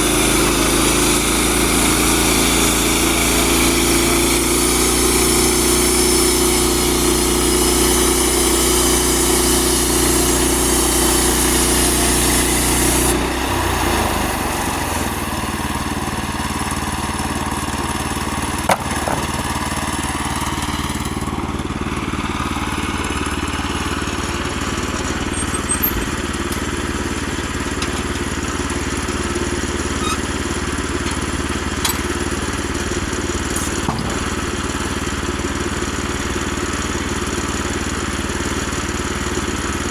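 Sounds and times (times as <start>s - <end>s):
sawmill gas engine running: 0.0s - 39.9s
sharp knocks: 18.6s - 19.7s, 33.6s - 34.8s.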